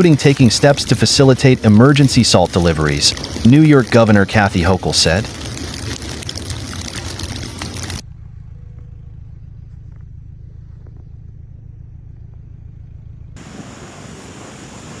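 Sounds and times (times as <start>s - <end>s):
low steady rumble: 0.0s - 15.0s
steady rushing hiss: 13.4s - 15.0s.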